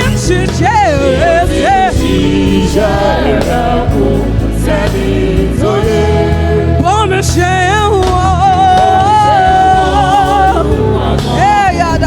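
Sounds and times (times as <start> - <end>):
band playing: 0.0 - 12.0
people singing: 0.0 - 12.0.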